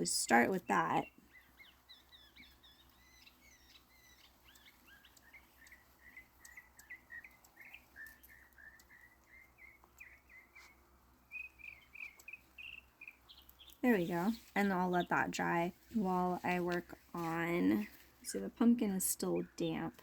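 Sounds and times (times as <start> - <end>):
faint birds chirping: 0.0 - 20.0
soft clicks: 3.7 - 10.8, 11.4 - 12.4.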